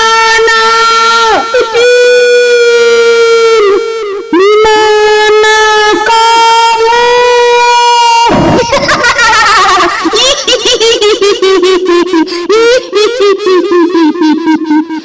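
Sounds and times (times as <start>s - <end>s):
high wailing ghostly voice: 0.0s - 10.8s.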